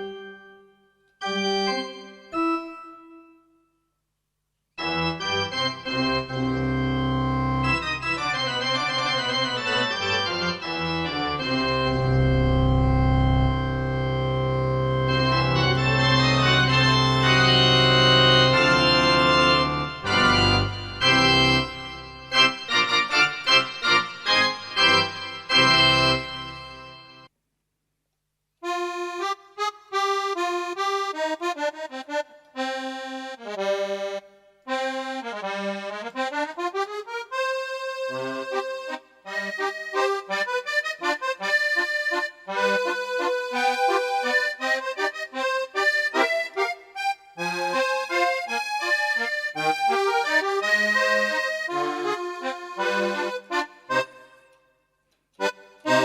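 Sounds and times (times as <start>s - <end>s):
electronic keyboard organ chords: 0.0s - 3.4s, 4.8s - 27.3s, 28.8s - 54.5s, 55.4s - 56.0s
keyboard accordion melody: 0.0s - 3.5s, 4.8s - 27.3s, 28.6s - 56.0s.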